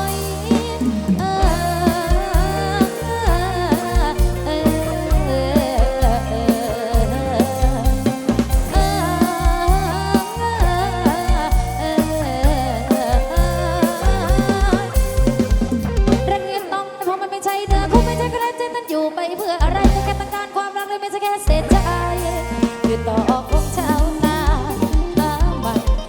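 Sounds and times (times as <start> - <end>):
heavy bass: 0.0 - 16.4, 17.7 - 18.4, 19.6 - 20.4, 21.5 - 26.0
drum kit beat: 0.0 - 16.7, 17.5 - 18.6, 19.4 - 26.0
wavering lead melody: 0.0 - 18.7.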